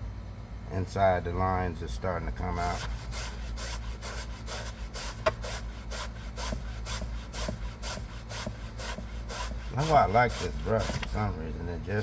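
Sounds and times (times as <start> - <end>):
brush scrubbing fabric upholstery: 2.6 - 11.3.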